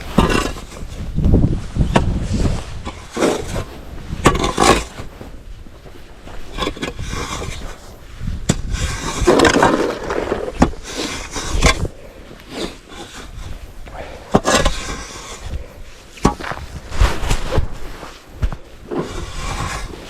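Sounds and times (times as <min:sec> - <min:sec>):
scraping snow and ice: 0:00.0 - 0:20.0.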